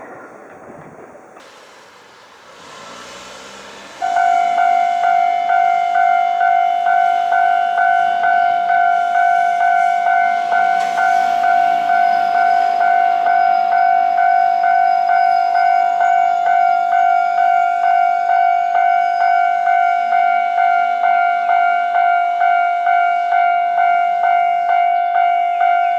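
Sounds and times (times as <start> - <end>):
brief hiss: 1.4 - 4.1
crossing warning bell ringing: 1.4 - 25.9.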